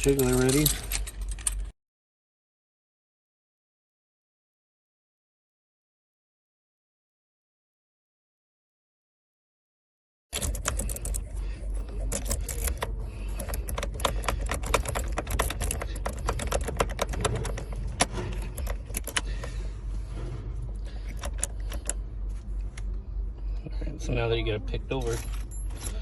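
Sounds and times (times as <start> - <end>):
metallic clicking and rattling: 0.0 - 1.7, 10.3 - 19.6, 20.8 - 22.0
steady low rumble: 10.4 - 26.0.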